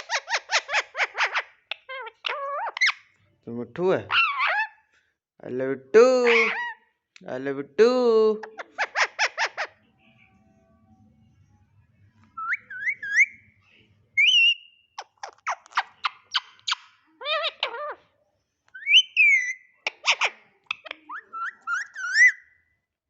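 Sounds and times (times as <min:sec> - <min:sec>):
parrot whistling: 0:12.4 - 0:13.6, 0:14.2 - 0:15.2, 0:18.8 - 0:22.6.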